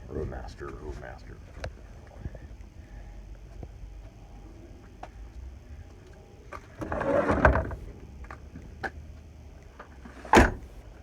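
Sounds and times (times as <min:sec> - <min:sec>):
car door scraping rattle: 0:06.8 - 0:07.8, 0:10.1 - 0:10.7.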